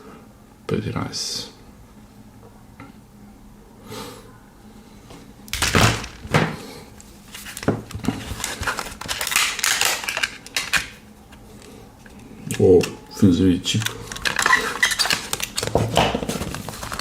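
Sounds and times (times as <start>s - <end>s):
plastic packaging pried open: 7.9s - 11.0s, 13.7s - 17.0s.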